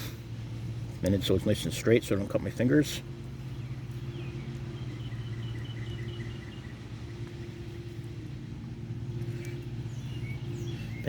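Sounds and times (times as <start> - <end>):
low motor hum: 0.0 - 11.0
bird chirping: 1.0 - 11.0.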